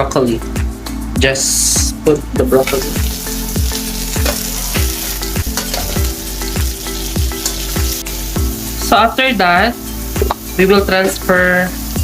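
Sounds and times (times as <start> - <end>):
vegetables sizzling in oil: 2.4 - 12.0.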